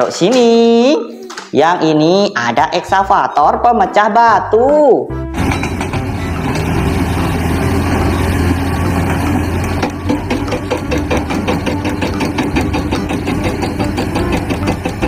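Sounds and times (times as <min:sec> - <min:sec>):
excavator engine idling: 0:05.4 - 0:15.0
rapid rhythmic hammering: 0:09.1 - 0:15.0.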